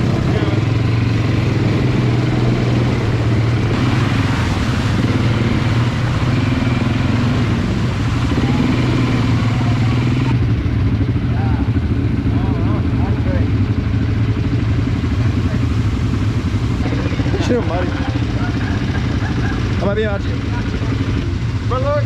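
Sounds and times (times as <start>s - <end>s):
quad bike engine drone: 0.0s - 22.0s.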